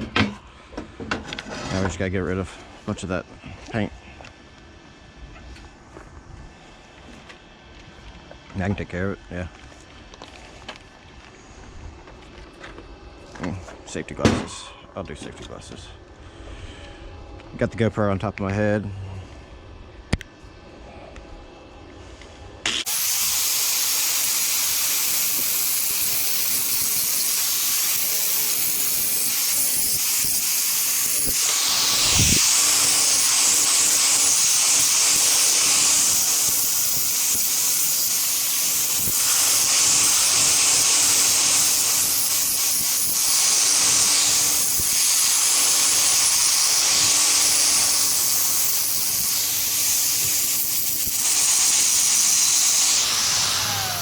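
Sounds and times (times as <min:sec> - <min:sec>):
angle grinder on metal: 0:22.6 - 0:54.0.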